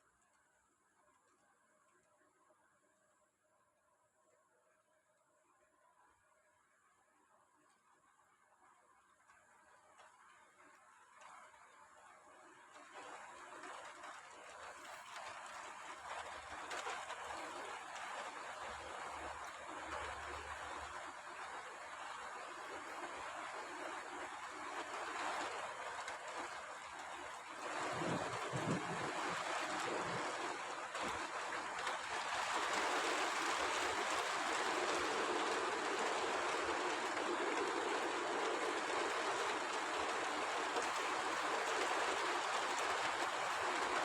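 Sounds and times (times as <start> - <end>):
rain falling: 10.0 - 44.0.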